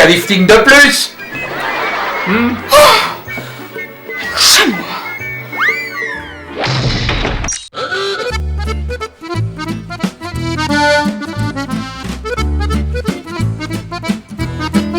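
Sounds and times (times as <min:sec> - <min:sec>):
accordion tune with bass notes: 0:00.0 - 0:06.5, 0:07.8 - 0:14.9
short noisy crash: 0:06.5 - 0:07.7.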